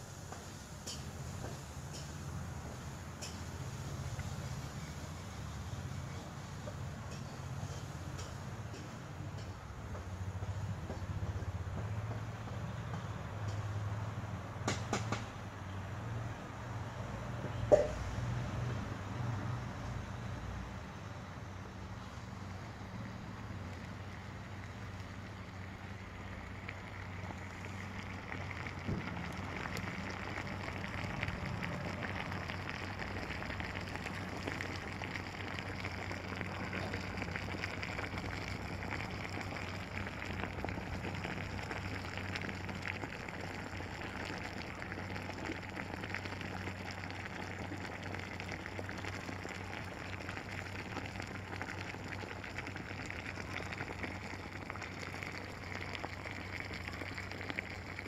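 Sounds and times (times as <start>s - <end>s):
low electrical hum: 15.3s - 58.0s
water fizzing and crackling: 22.2s - 58.0s.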